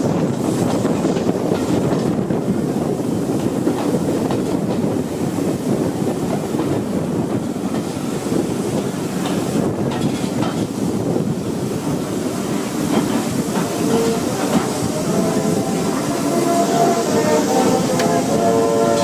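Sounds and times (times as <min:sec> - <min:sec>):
train wheels rumbling on rails: 0:00.0 - 0:19.0.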